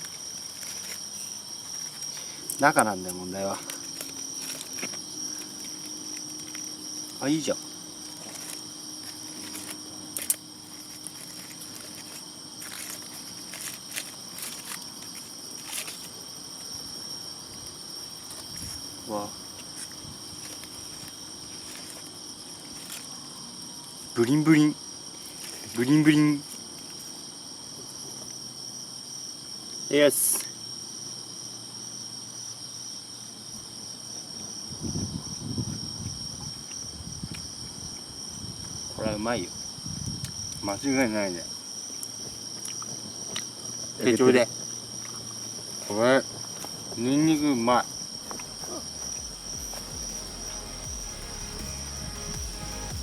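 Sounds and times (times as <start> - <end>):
insects chirping in chorus: 0.0 - 53.0
muffled scuffling: 8.1 - 16.3.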